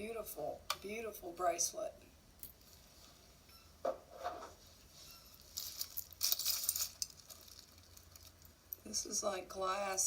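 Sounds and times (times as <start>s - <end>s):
jewelry clinking and jangling: 5.2s - 8.6s.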